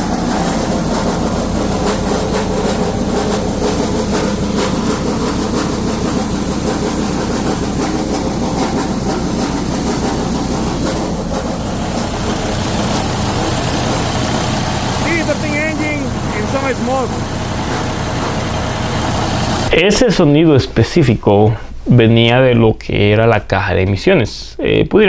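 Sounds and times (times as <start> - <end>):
rapid metallic rattling: 0.0 - 19.7
diesel truck engine running: 0.0 - 19.8.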